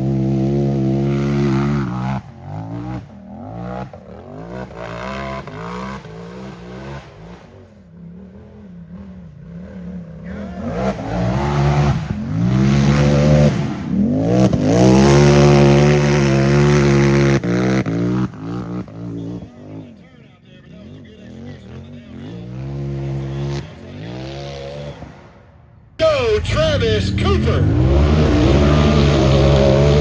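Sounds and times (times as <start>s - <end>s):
engine revving hard: 10.3s - 19.4s, 26.2s - 30.0s.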